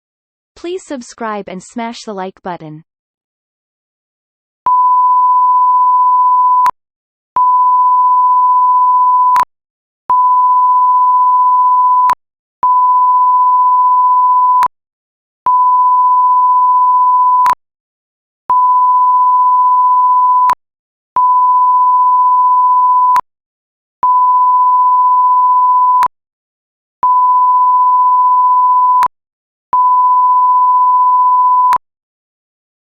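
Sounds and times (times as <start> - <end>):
censor beep tone: 4.7 - 6.7, 7.4 - 9.5, 10.1 - 14.7, 15.5 - 17.6, 18.5 - 20.6, 21.2 - 23.2, 24.0 - 26.1, 27.0 - 29.1, 29.8 - 31.8.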